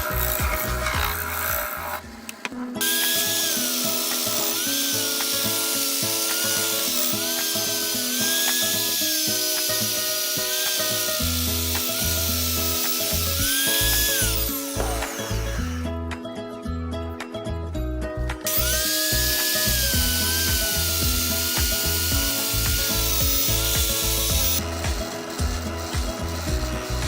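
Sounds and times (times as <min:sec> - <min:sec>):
lathe tool scraping wood: 0:00.0 - 0:02.0, 0:02.8 - 0:15.9, 0:18.5 - 0:27.0
background music: 0:00.0 - 0:27.0.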